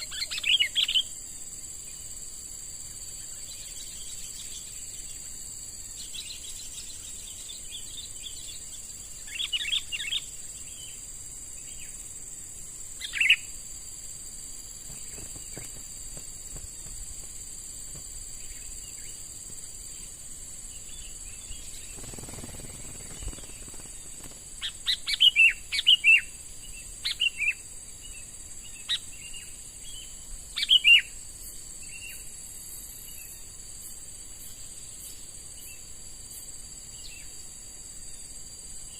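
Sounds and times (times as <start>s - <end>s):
bird chirping calls: 0.0s - 1.1s, 20.8s - 26.3s
high insect drone: 0.0s - 38.9s.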